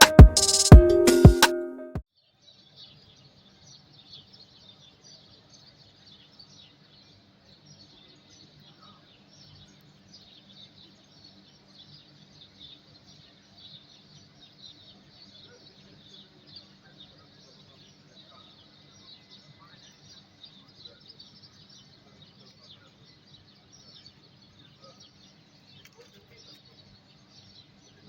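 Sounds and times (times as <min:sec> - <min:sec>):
musical intro: 0:00.0 - 0:02.0
birds chirping: 0:02.7 - 0:28.0.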